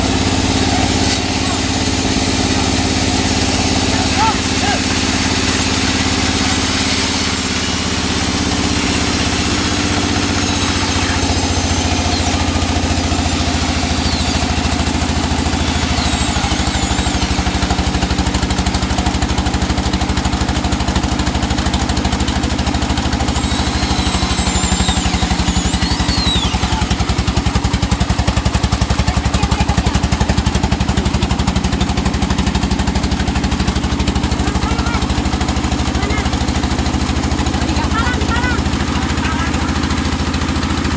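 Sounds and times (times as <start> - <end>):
engine running steadily: 0.0 - 40.9
faint high chirps: 23.3 - 27.3.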